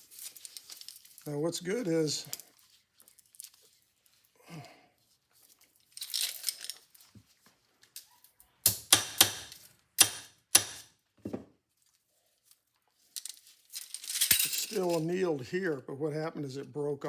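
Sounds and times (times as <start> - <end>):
metal parts clicking and clinking: 0.0 - 1.3, 2.1 - 3.6, 5.8 - 7.0, 13.0 - 15.1.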